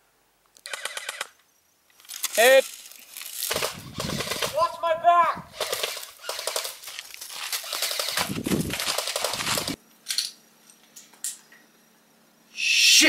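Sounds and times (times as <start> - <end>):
airsoft gun firing: 3.5 - 4.7, 5.6 - 6.8, 7.6 - 9.8.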